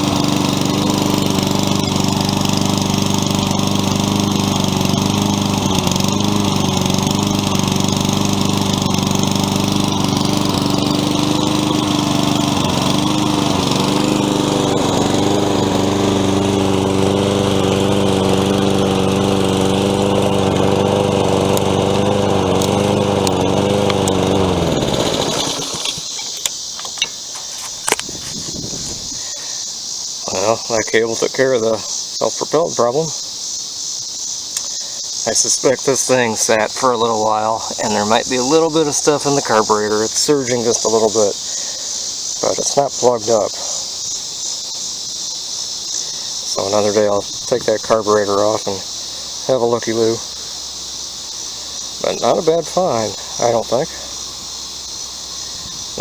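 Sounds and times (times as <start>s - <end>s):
engine winding down: 0.0s - 29.3s, 35.3s - 45.1s, 45.9s - 56.0s
lawn mower engine running: 0.0s - 33.8s, 34.4s - 56.0s
clicks: 25.4s - 28.1s.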